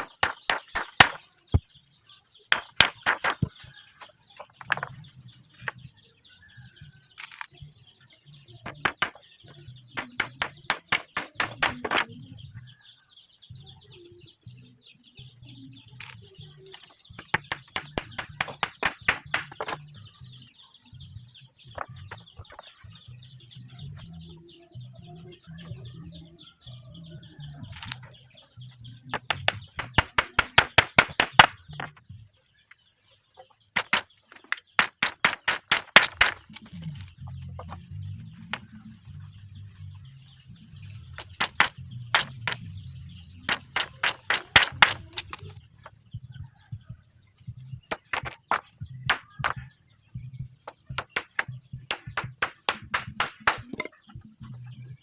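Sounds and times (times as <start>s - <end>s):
rapid sharp knocks: 2.5s - 3.5s, 17.3s - 19.8s, 29.2s - 32.0s, 50.9s - 53.8s.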